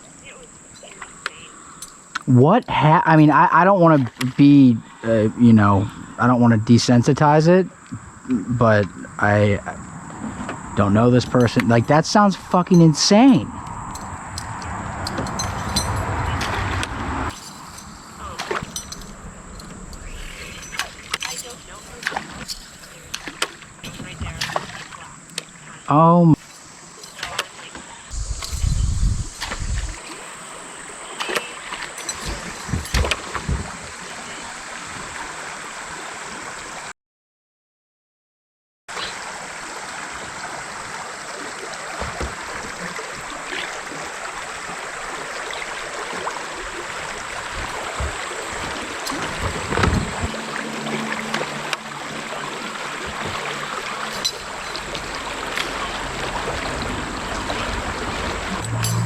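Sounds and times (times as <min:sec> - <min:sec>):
river water rushing: 0:07.1 - 0:28.8, 0:29.4 - 0:36.9, 0:39.0 - 0:59.0
thin high whine: 0:46.2 - 0:59.0.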